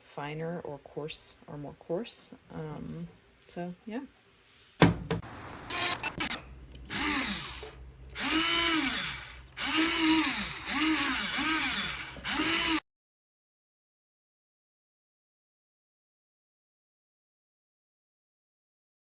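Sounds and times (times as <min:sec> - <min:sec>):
electric grinder motor whining: 0:05.2 - 0:12.8
clicks: 0:05.4 - 0:08.3.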